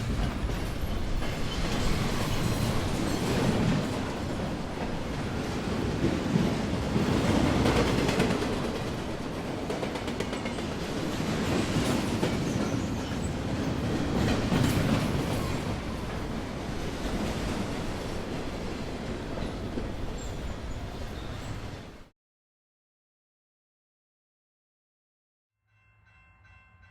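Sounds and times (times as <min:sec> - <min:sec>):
wheels clattering over rail joints: 0:00.0 - 0:21.5
train rumbling on rails: 0:00.0 - 0:22.1.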